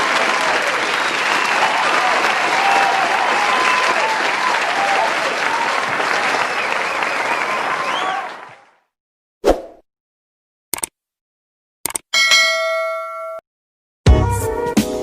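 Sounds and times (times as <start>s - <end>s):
crowd cheering and calling: 0.0s - 8.8s
crowd clapping: 0.0s - 8.9s.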